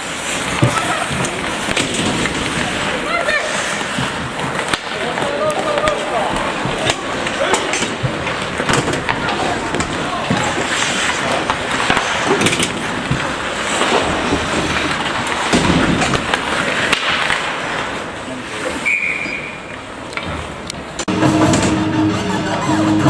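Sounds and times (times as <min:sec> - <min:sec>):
skates scraping on ice: 0:00.0 - 0:21.4
sticks and puck clacking: 0:00.0 - 0:21.9
short high whistle: 0:18.8 - 0:19.6.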